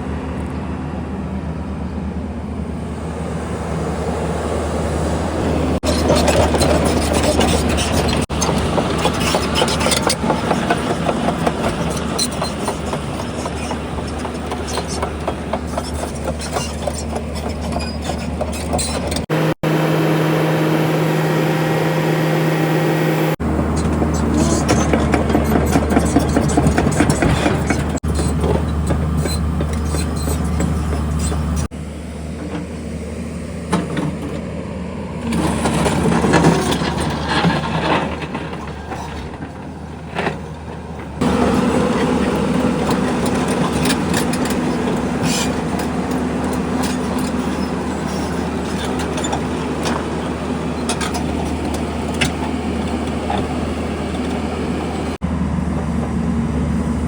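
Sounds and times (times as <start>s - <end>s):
engine running steadily: 0.0s - 57.0s.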